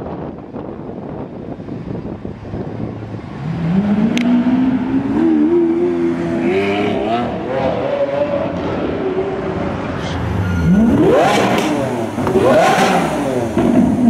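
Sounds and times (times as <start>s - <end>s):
street noise: 0.0s - 14.0s
sports car engine accelerating: 2.8s - 14.0s.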